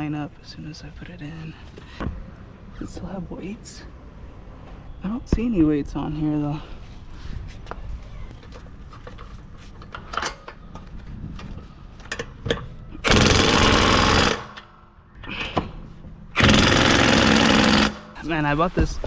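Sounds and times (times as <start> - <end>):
clicks and knocks of handling bolts: 7.7 - 12.8
impact wrench hammering: 13.0 - 14.7, 16.4 - 18.2.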